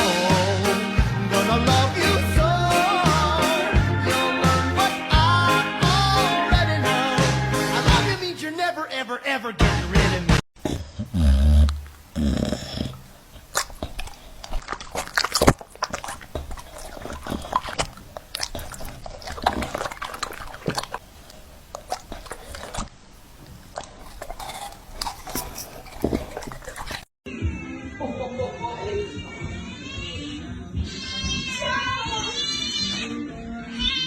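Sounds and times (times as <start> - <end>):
dog chewing clicks and knocks: 23.8 - 27.0.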